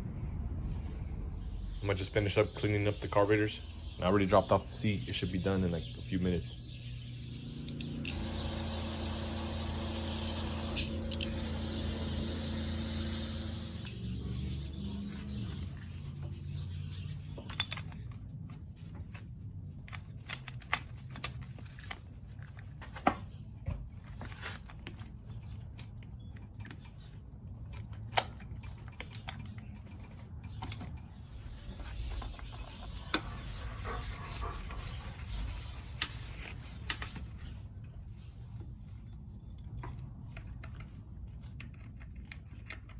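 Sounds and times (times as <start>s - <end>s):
pressure washer motor humming: 7.7s - 14.0s
tools and parts clicking: 7.7s - 14.0s, 17.0s - 33.7s, 35.8s - 42.9s
pressure washer spray hissing: 7.8s - 14.0s.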